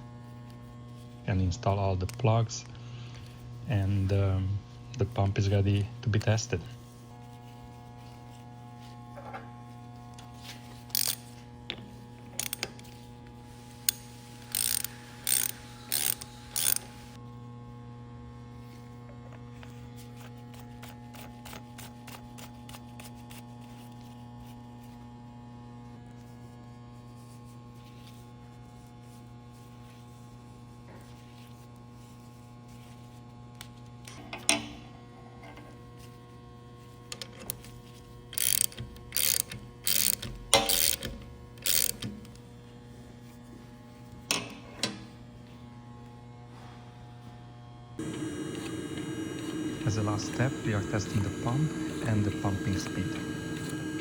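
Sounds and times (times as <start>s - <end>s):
fast mechanical ticking: 14.5s - 17.2s, 38.4s - 41.0s
pump motor hum: 48.0s - 54.0s.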